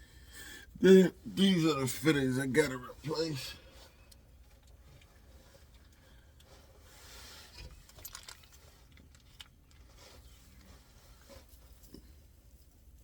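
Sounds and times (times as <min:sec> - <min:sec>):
handling clicks and rustles: 0:03.8 - 0:13.0.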